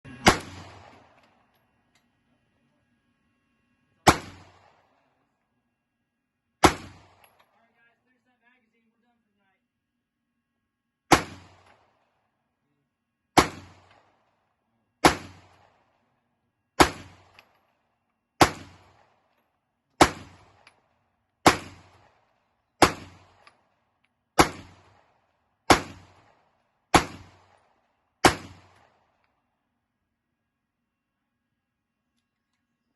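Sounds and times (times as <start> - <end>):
gunshots with echo: 0.1 - 1.3, 4.0 - 5.1, 11.1 - 12.1, 13.4 - 14.4, 15.0 - 16.0, 16.8 - 17.6, 18.4 - 19.3, 21.4 - 23.5, 24.4 - 29.2.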